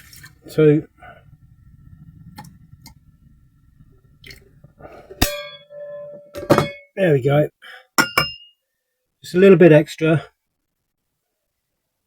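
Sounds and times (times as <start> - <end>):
water pouring into saucepan: 0.0 - 0.8
metal kitchenware clanging: 5.0 - 7.0, 8.0 - 8.5.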